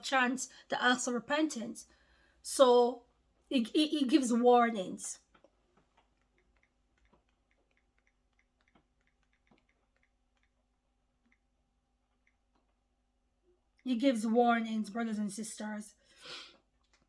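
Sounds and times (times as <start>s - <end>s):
small clicks: 5.2s - 11.5s.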